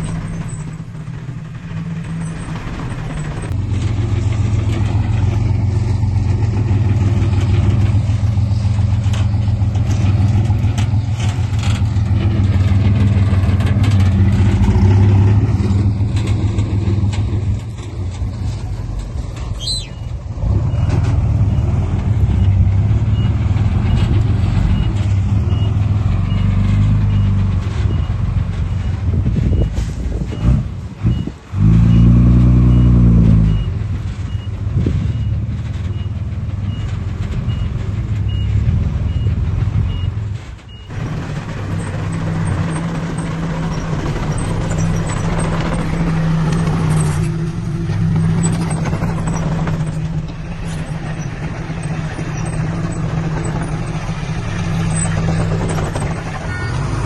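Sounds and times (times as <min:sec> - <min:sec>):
diesel truck engine: 0:00.0 - 0:57.0
reversing beeper: 0:31.1 - 0:36.9.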